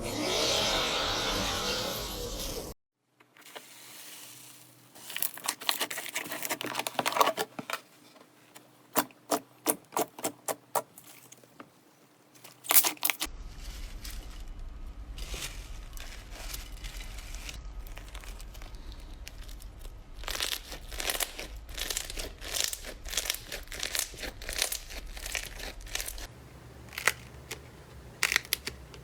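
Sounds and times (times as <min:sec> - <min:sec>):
slime rustling: 0:12.3 - 0:29.0
slime crackling and popping: 0:15.2 - 0:26.3, 0:26.9 - 0:27.5.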